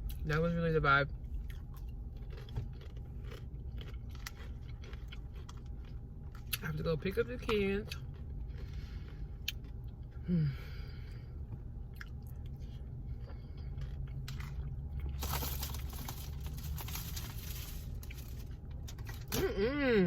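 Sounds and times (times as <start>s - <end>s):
chewing food: 1.2s - 6.7s, 7.4s - 10.2s, 11.5s - 19.2s
person humming: 19.4s - 20.0s.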